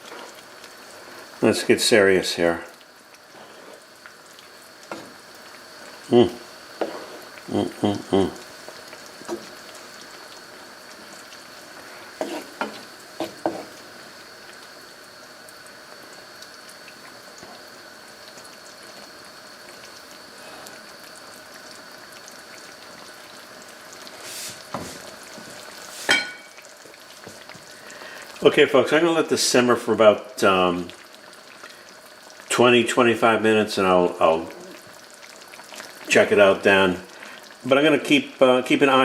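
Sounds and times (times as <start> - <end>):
sauce simmering in a pan: 0.0 - 39.0
spoon scraping a pan: 6.8 - 7.3, 12.1 - 13.8, 25.9 - 26.6.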